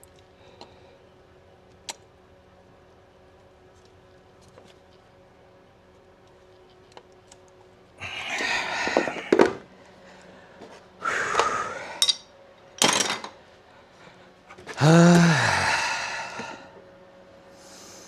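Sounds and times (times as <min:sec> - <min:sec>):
metal parts clinking: 0:12.0 - 0:13.3
short groan: 0:14.7 - 0:16.7.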